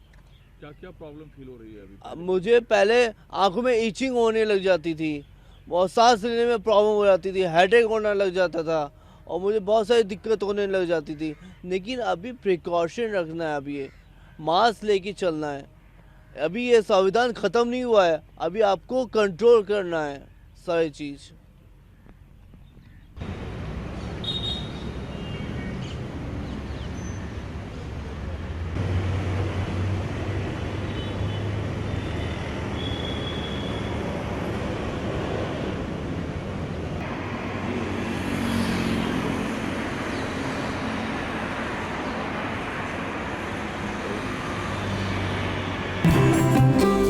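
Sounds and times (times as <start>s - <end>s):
road traffic noise: 0.0s - 18.9s, 21.3s - 47.0s
music: 46.1s - 47.0s.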